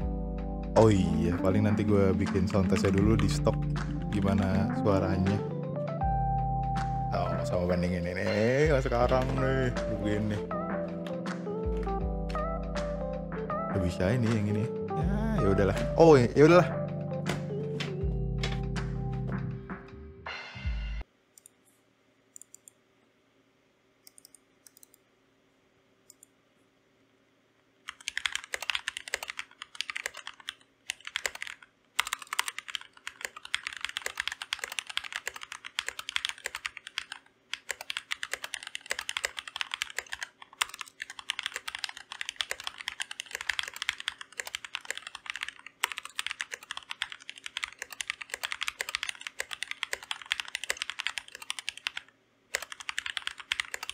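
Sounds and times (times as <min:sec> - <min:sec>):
mechanical keyboard typing: 0:00.8 - 0:04.8, 0:27.9 - 0:53.9.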